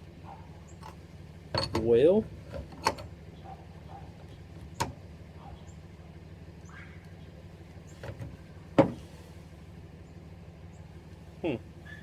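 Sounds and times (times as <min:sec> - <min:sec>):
fitting cracking loose: 0:01.6 - 0:03.1.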